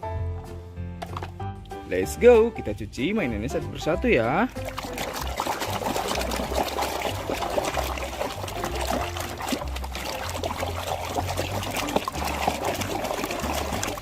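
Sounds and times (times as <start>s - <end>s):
water trickling and splashing: 3.5s - 14.0s
scrubbing plastic toy by hand: 4.5s - 14.0s.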